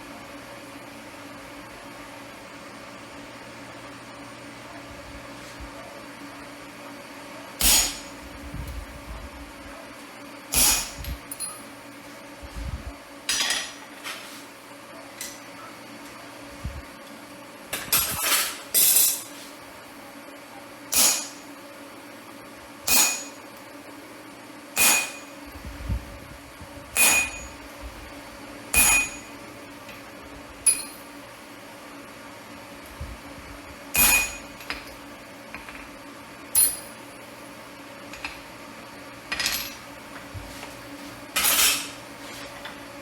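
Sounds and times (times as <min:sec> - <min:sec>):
hammer striking steel on anvil: 0:07.6 - 0:08.2, 0:10.5 - 0:11.0, 0:20.9 - 0:21.5, 0:22.9 - 0:23.4, 0:24.8 - 0:25.4, 0:27.0 - 0:27.6, 0:28.8 - 0:29.3, 0:34.0 - 0:34.5.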